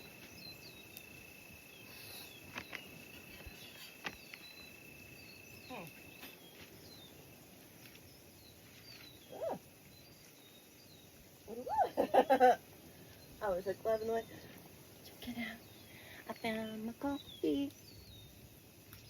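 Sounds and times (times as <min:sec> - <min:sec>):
small chirps: 0:00.0 - 0:07.2.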